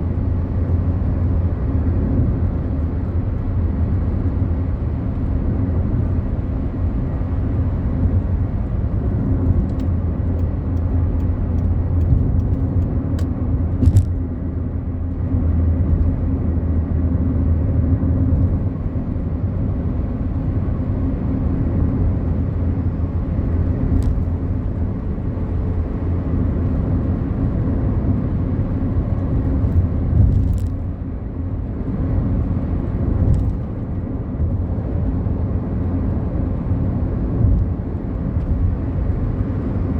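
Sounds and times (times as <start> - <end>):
car engine and tyre rumble: 0.0 - 39.9.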